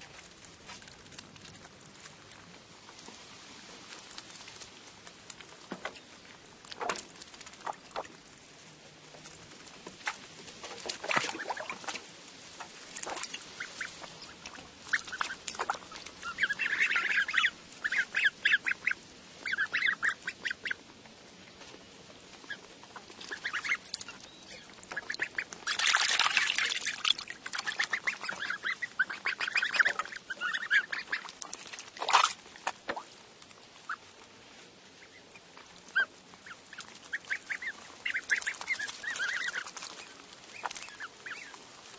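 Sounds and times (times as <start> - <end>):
goslings cheeping: 13.0 - 20.8, 22.4 - 32.4, 35.0 - 41.6.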